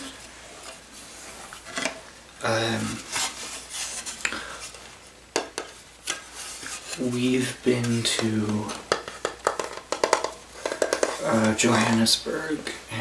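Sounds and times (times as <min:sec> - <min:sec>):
fingers tapping and scraping wood: 0:07.8 - 0:11.9.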